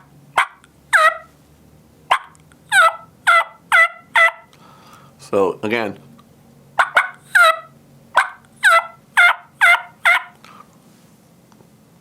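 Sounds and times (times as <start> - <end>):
turkey call cuts and yelps: 0.0 - 1.3, 2.1 - 4.5, 6.8 - 10.4.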